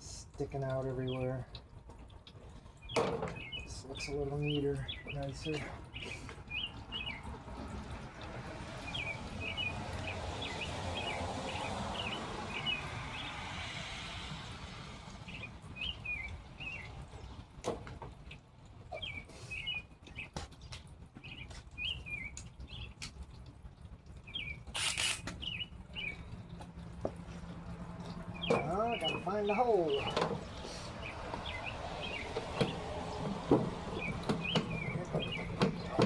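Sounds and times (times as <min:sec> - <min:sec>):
short burst of noise: 0:24.7 - 0:25.4
sharp knocks: 0:32.3 - 0:36.0.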